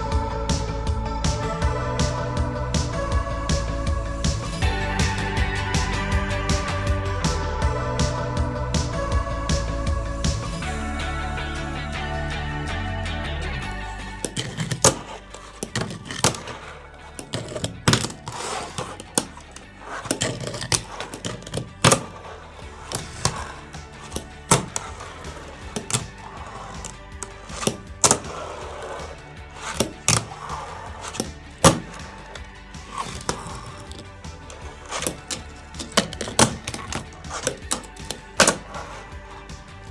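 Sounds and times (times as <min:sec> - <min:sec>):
fingerboard wheels rolling: 0:13.8 - 0:39.9.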